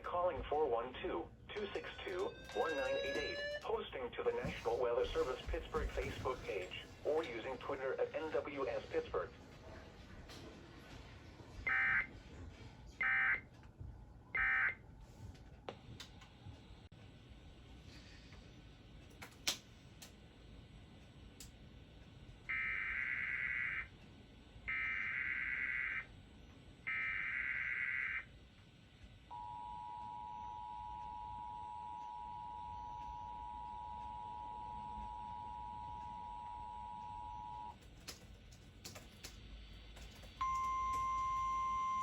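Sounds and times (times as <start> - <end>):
clicks: 1.5 - 3.8.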